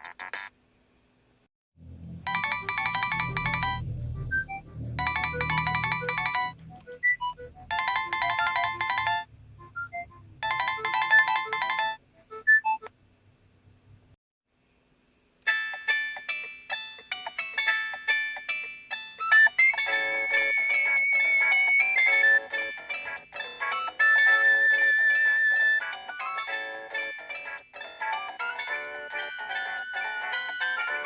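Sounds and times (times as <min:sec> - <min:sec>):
low rumble: 0:01.8 - 0:11.5
mobile phone ringtone beeping: 0:02.3 - 0:12.9, 0:19.1 - 0:31.0.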